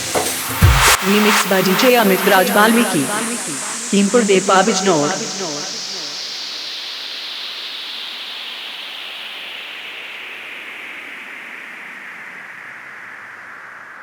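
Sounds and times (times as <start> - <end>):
white noise sweep falling in pitch: 0.0 - 10.8.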